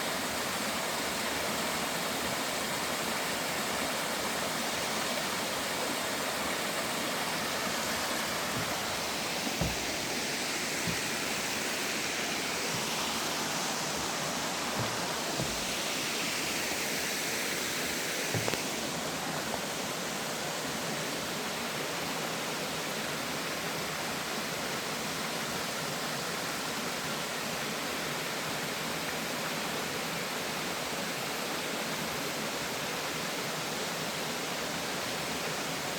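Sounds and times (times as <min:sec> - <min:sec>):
stream rushing over rocks: 0:00.0 - 0:35.9
soft low thumps: 0:08.4 - 0:11.6, 0:13.8 - 0:15.8.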